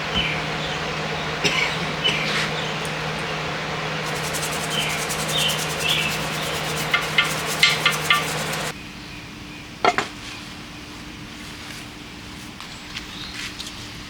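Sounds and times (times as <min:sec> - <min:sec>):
low machine hum: 0:00.0 - 0:08.7
scrubbing on metal: 0:01.4 - 0:08.7.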